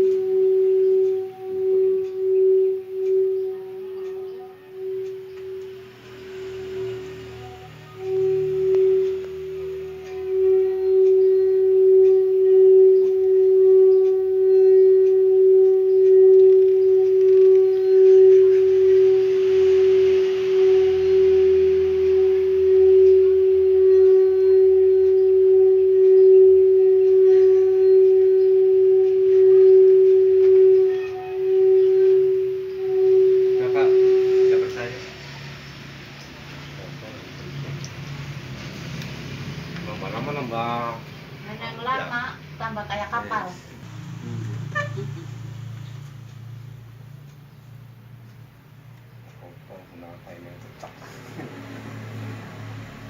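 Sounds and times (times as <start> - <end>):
singing bowl ringing: 0.0 - 43.8.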